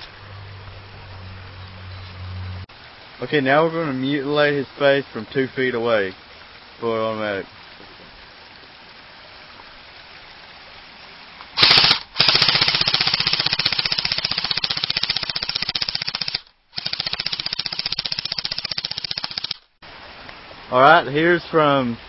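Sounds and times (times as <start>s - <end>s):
airsoft rifle firing automatic: 11.6s - 19.6s.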